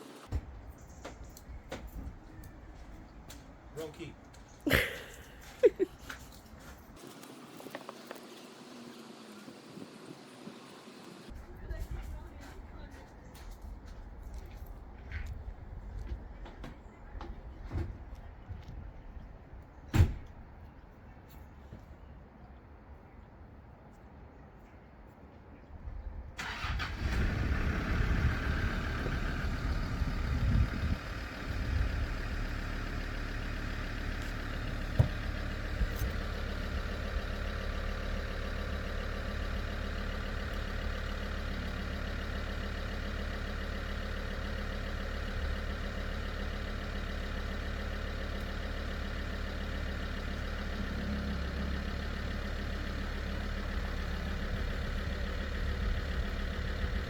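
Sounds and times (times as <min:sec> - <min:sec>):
car engine starting and idling: 0:26.3 - 0:57.0.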